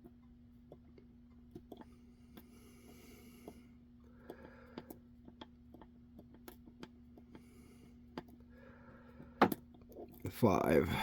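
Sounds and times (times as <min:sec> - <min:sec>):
soft breaths: 0:01.8 - 0:05.1, 0:07.3 - 0:09.4.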